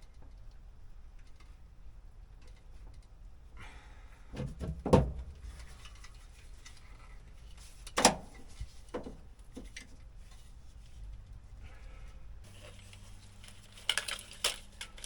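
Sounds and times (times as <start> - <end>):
hard objects knocking: 4.4 - 5.5.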